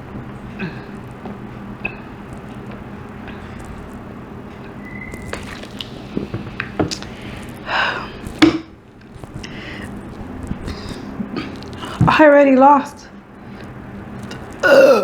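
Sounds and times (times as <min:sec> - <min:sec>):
person gulping drink: 0:14.3 - 0:15.0
breathy gasp: 0:14.6 - 0:15.0
person burping: 0:14.6 - 0:15.0.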